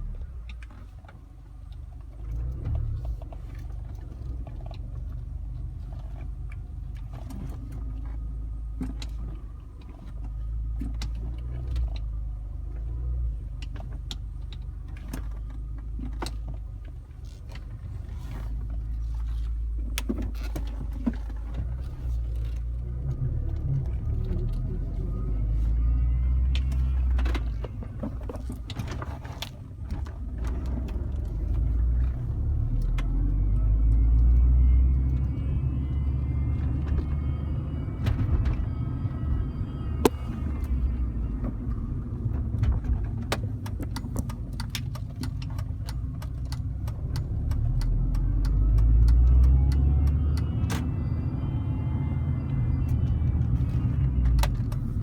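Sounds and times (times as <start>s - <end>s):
engine and road rumble: 0.0s - 55.0s
sharp clicks and rattles: 41.4s - 49.8s.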